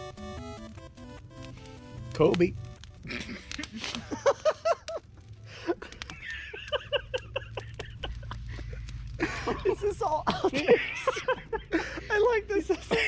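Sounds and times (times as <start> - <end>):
sharp clicks: 0.6 - 9.2
young people laughing: 3.1 - 13.0.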